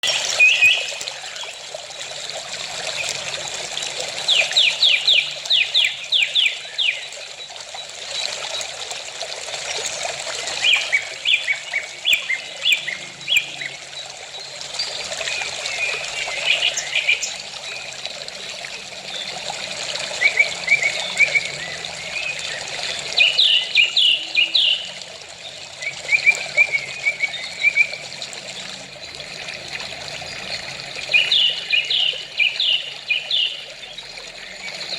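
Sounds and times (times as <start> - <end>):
trickle of running water: 0.0 - 34.9
small birds chirping: 29.0 - 34.9.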